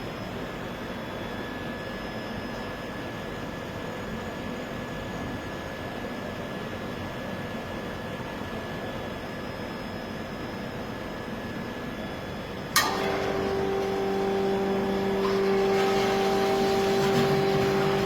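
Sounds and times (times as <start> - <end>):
sharp clack: 12.8 - 13.3
keg washer rushing noise: 12.8 - 18.0
motor humming: 12.8 - 18.0.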